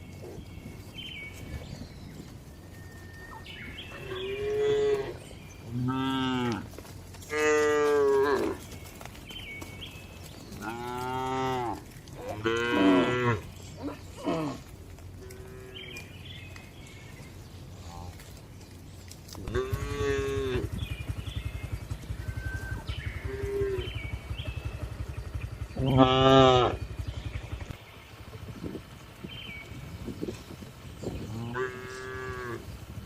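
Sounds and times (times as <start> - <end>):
low background hum: 0.0 - 33.0
cattle mooing: 3.9 - 8.6, 10.6 - 16.1, 19.4 - 20.7, 25.8 - 26.8, 31.2 - 32.7.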